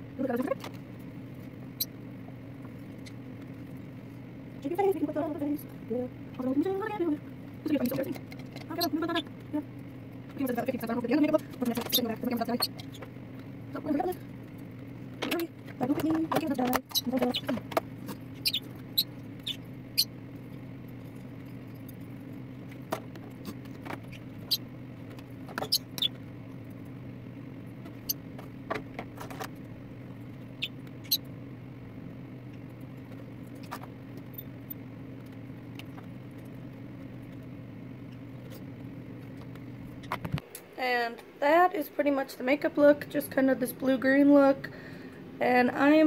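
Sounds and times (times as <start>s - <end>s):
steady low hum: 0.0s - 46.0s
parrots chirping and squeaking: 2.8s - 3.3s, 7.8s - 13.2s, 15.2s - 22.0s, 23.2s - 26.3s, 27.8s - 28.4s, 30.5s - 31.3s, 33.5s - 34.9s.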